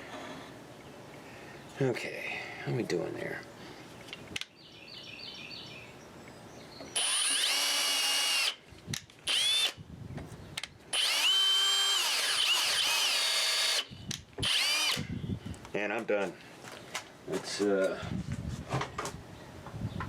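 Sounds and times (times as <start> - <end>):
drill driving screws into wood: 7.0 - 9.8, 10.9 - 15.1.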